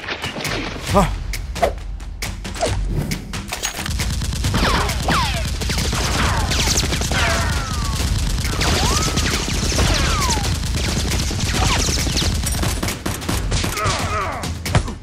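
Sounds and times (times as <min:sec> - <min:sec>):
automatic gunfire: 0:03.9 - 0:14.2.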